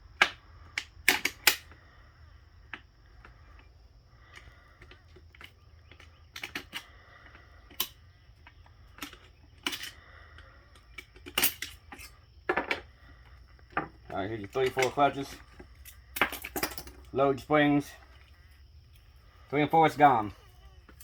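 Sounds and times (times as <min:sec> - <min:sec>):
metal parts and tools clinking: 0:04.3 - 0:10.0, 0:10.7 - 0:12.9, 0:13.6 - 0:19.2.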